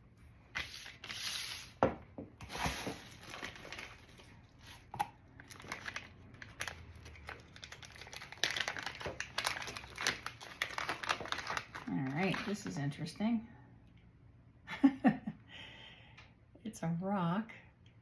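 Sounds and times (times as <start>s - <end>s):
packing wrap crinkling and tearing: 2.5s - 12.7s.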